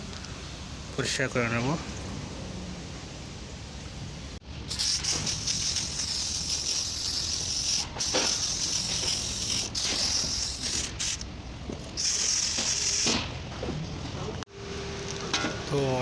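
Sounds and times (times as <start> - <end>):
pressurised spray hissing: 4.7 - 11.2, 12.0 - 13.2.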